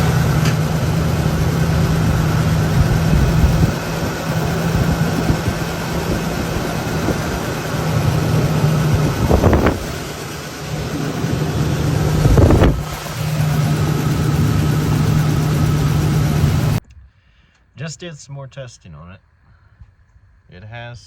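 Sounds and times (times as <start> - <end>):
misfiring engine revving: 0.0 - 16.8.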